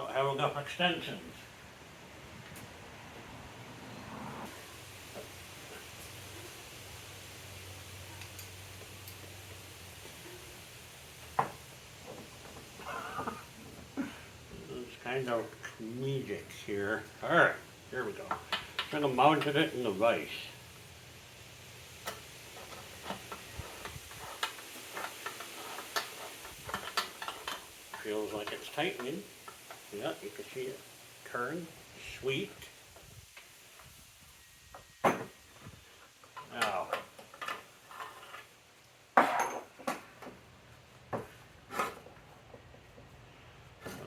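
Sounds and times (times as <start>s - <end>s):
hand tools clicking on metal: 22.0s - 29.8s
metal scrape: 37.8s - 38.5s, 41.7s - 42.1s.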